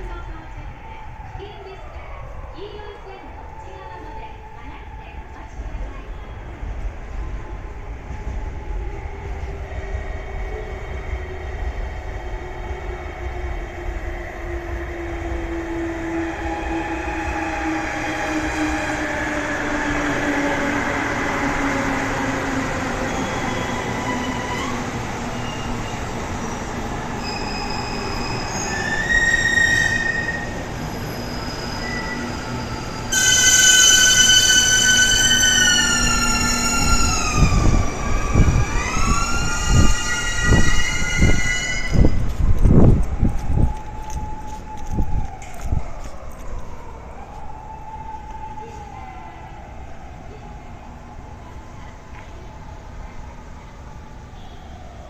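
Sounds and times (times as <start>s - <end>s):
brake and wheel squeal: 27.2s - 37.6s.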